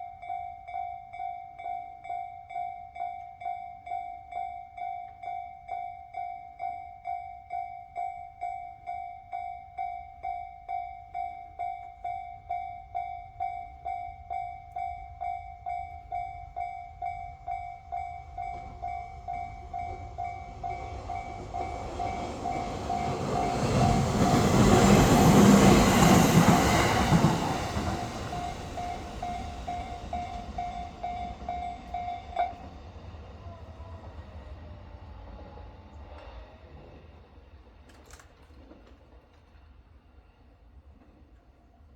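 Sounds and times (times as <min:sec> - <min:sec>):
electric train rumble: 0:11.9 - 0:41.8
electronic crossing bell dinging: 0:25.7 - 0:32.7.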